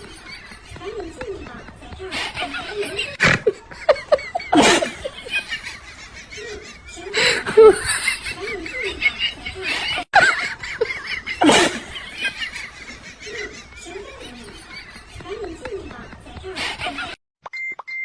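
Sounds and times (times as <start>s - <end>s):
loud laughter: 2.1s - 14.9s.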